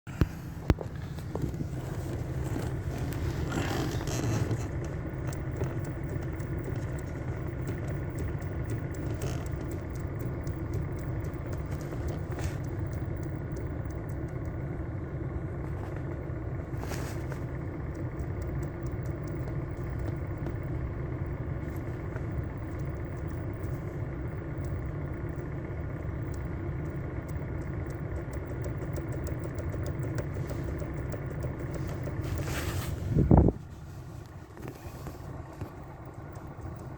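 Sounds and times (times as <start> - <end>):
car engine idling: 0.0 - 36.9
steering column clicks and knocks: 0.1 - 14.6, 26.2 - 33.5.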